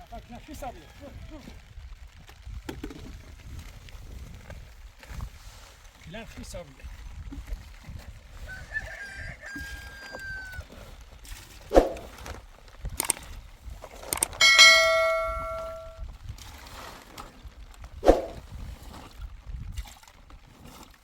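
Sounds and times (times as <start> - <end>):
metal object ringing: 14.4 - 16.0
sharp knocks: 14.4 - 16.0.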